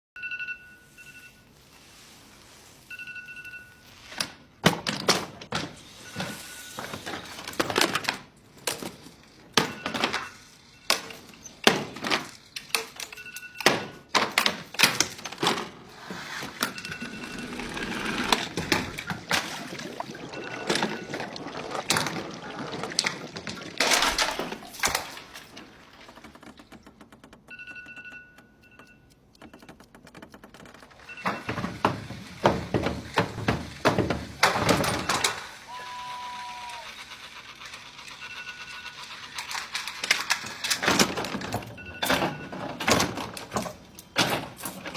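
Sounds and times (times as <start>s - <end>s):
alarm clock beeping: 0.2s - 1.5s, 2.9s - 4.0s, 13.1s - 14.1s, 16.4s - 21.6s, 27.5s - 29.9s, 31.0s - 31.8s, 37.9s - 39.4s.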